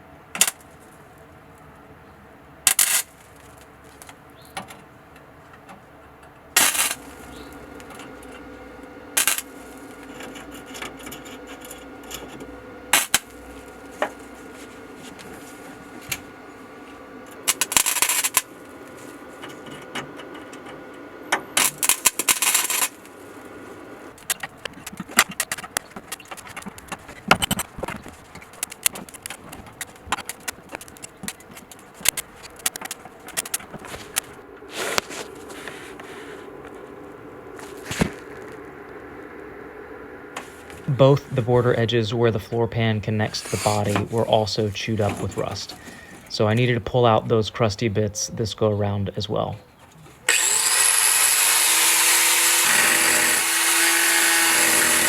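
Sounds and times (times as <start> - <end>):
steady hum: 0.0 - 55.0
welding crackle: 0.4 - 0.8, 2.7 - 4.2, 6.5 - 46.8, 50.2 - 55.0
small metallic clicks and knocks: 9.2 - 14.2, 24.2 - 34.4.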